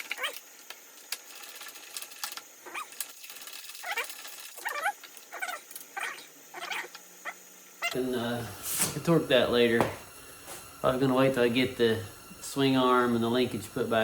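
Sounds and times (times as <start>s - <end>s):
dog whining: 0.1s - 0.4s, 2.6s - 3.0s, 3.8s - 8.0s.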